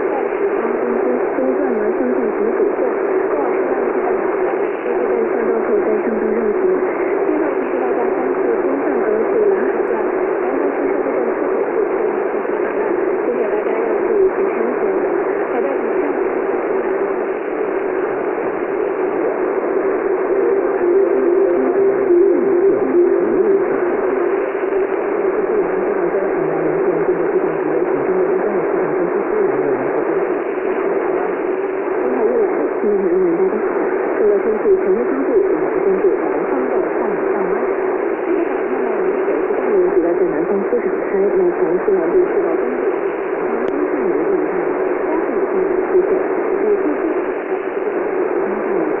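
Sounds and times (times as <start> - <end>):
shortwave radio static and hiss: 0.0 - 49.0
wavering radio drone: 0.0 - 49.0.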